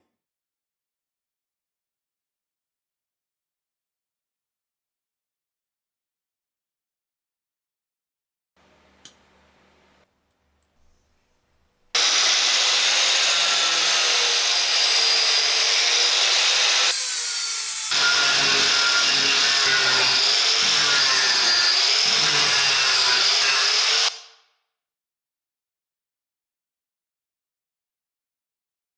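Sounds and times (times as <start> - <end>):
angle grinder grinding wood: 12.0 - 24.1.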